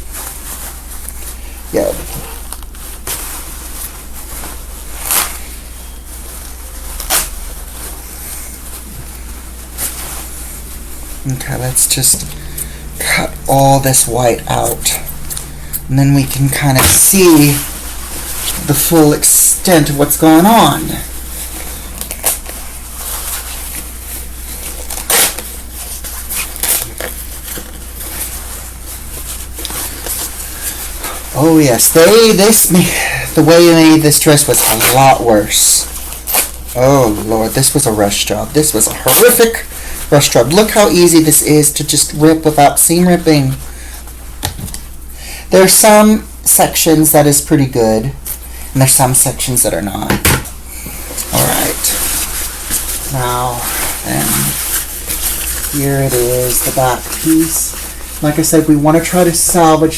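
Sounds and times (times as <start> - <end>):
fabric rustling: 0.0 - 46.9, 47.7 - 59.9
low electrical hum: 0.0 - 59.9
fabric rasping apart: 24.6 - 28.4.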